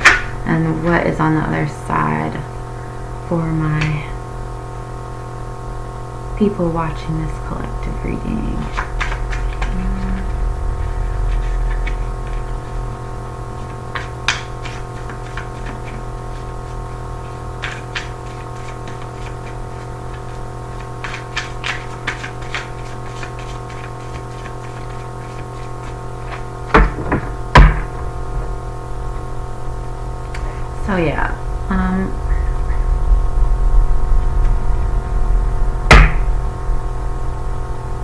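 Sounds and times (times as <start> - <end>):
electrical mains hum: 0.0 - 38.0
cards clicking and tapping: 8.6 - 10.3, 13.6 - 27.9
cards knocking on table: 13.6 - 16.0, 26.3 - 28.0.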